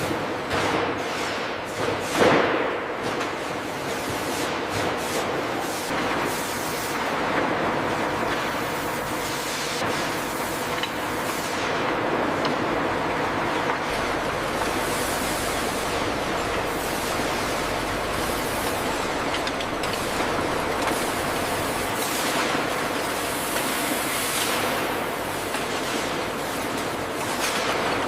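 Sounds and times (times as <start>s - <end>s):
workshop machinery hiss and hum: 0.0s - 28.0s.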